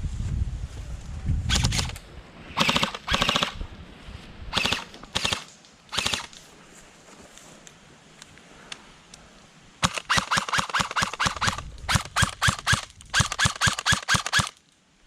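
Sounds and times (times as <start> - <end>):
airsoft guns firing bursts: 2.6 - 3.6, 4.5 - 6.3, 9.8 - 14.6.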